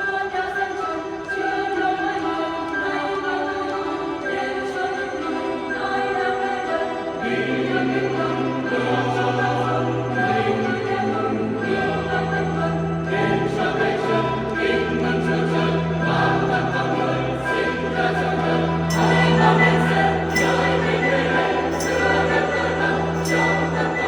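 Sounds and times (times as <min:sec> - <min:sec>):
choir singing a hymn: 0:00.0 - 0:24.0
held low accompaniment notes: 0:07.2 - 0:24.0.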